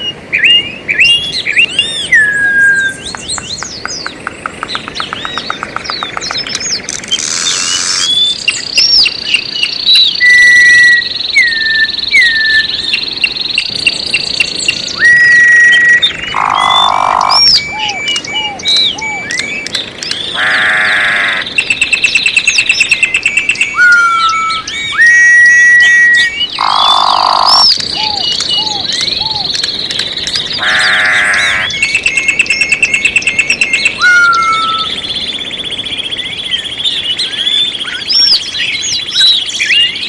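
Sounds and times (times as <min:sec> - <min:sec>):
birds singing: 0:00.0 - 0:40.0
buzzy croak-like bird calls: 0:03.1 - 0:10.2, 0:15.6 - 0:40.0.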